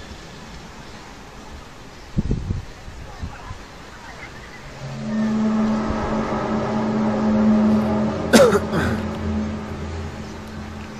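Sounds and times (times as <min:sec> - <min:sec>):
low hum: 0:04.6 - 0:10.9
falling groan: 0:04.7 - 0:10.9
loud pitched drone from sky: 0:04.7 - 0:10.9.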